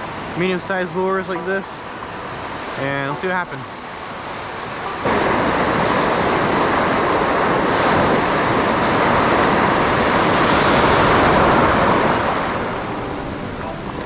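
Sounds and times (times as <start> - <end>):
ocean surf rushing: 0.0 - 14.0.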